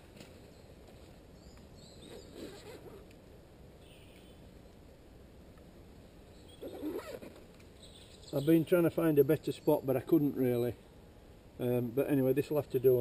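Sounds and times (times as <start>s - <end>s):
faint bird chirps: 1.4s - 3.0s, 3.8s - 4.5s, 6.3s - 7.2s, 7.8s - 10.8s.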